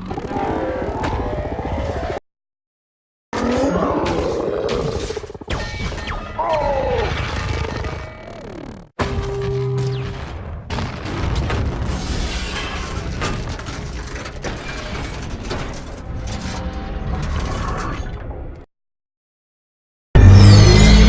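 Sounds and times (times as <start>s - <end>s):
mechanical clanks and whirring gears: 9.0s - 18.6s.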